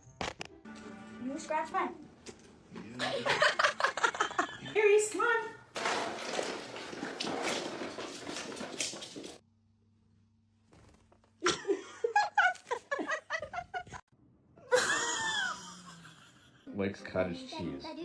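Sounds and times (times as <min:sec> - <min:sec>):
rustling noise: 0:05.8 - 0:09.4.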